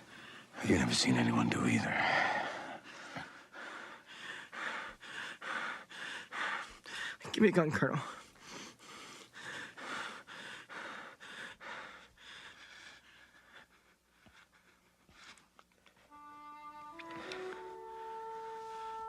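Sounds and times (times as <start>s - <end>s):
person breathing heavily: 1.8s - 7.3s, 8.1s - 16.0s
soft music tones: 15.8s - 19.0s.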